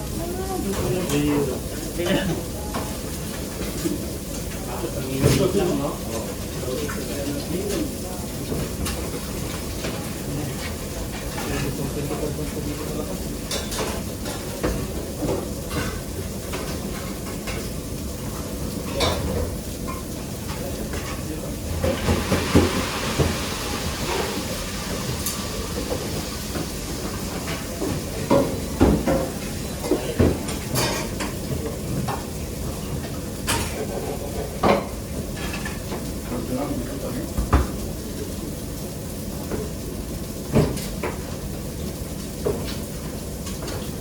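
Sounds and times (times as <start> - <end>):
pans and utensils clattering: 0.6 - 37.9, 40.4 - 41.4.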